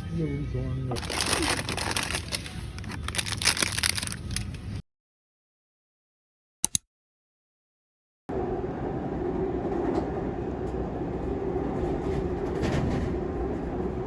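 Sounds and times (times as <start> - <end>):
vehicle rumble and hiss: 0.0 - 4.8.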